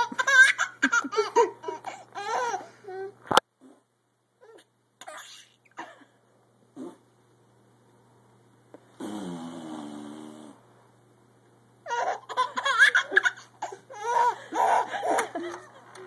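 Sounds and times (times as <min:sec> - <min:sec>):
baby laughing: 0:00.0 - 0:03.0, 0:05.0 - 0:05.8, 0:11.9 - 0:16.0
fart sound rising in pitch: 0:09.0 - 0:10.6.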